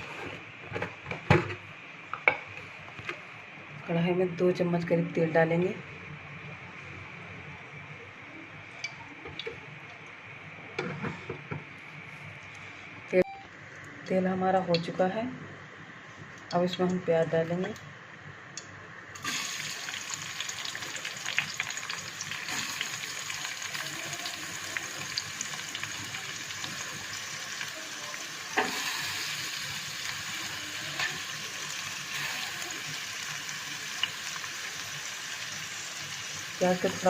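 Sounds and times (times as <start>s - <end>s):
onions sizzling in hot oil: 19.2s - 37.0s.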